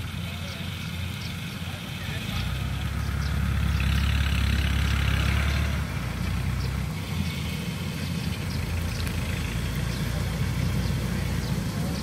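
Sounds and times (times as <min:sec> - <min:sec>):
combine harvester engine running: 0:00.0 - 0:12.0.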